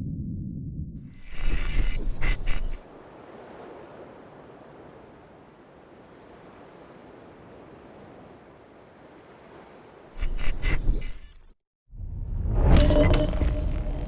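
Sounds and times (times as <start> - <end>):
underwater rushing hiss: 1.2 - 2.9, 10.2 - 11.5.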